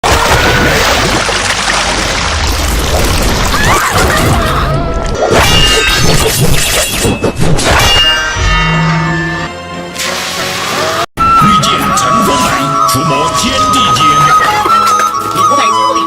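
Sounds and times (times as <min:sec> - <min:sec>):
music: 0:08.0 - 0:16.0.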